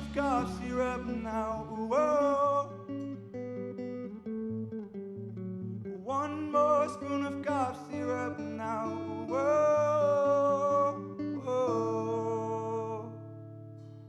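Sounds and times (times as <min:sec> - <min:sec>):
person singing long notes: 0:00.0 - 0:03.1, 0:06.0 - 0:13.2
acoustic guitar: 0:00.0 - 0:14.0.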